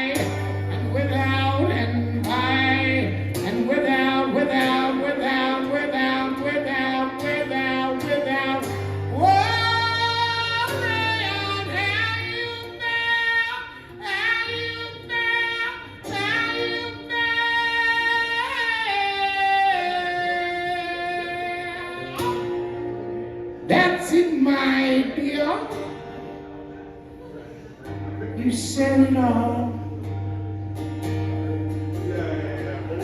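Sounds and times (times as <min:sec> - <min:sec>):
person singing folk song: 0:00.0 - 0:26.7, 0:27.8 - 0:33.0.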